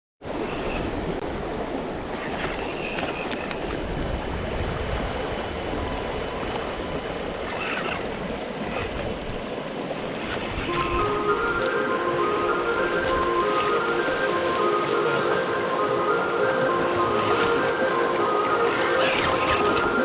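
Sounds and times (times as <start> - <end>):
stream water rushing: 0.2 - 20.0
faint high whines and ticks: 0.3 - 4.2, 6.3 - 14.6, 16.4 - 20.0.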